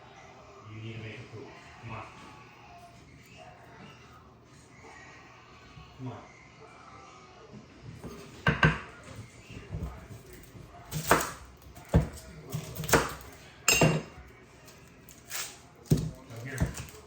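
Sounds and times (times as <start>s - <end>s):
dishes and utensils clinking: 8.0s - 17.0s.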